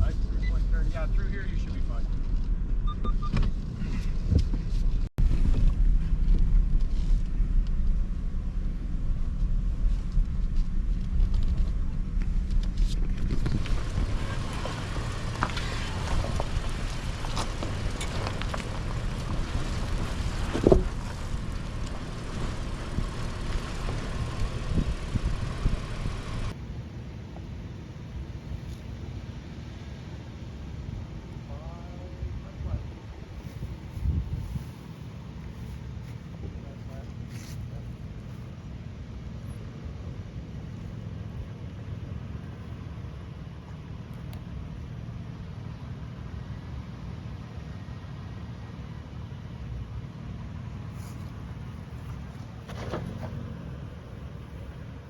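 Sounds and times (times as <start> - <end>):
truck engine low rumble: 0.0 - 55.0
truck knocking over rocks: 12.5 - 26.5, 52.1 - 53.9.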